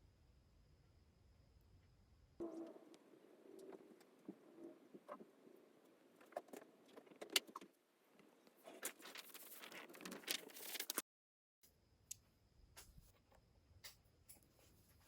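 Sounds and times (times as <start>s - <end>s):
rustling: 8.6s - 11.0s.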